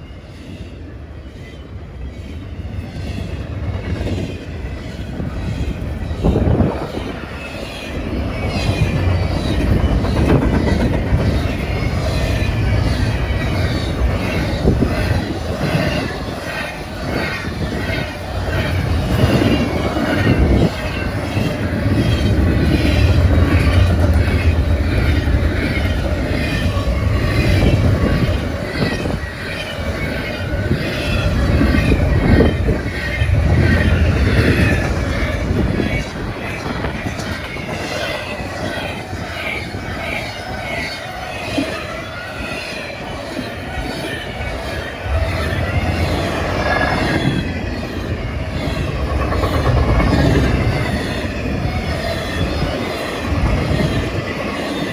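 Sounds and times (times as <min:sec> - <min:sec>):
train wheels rumbling on rail: 0:00.0 - 0:54.9
train wheels clicking: 0:42.4 - 0:54.9.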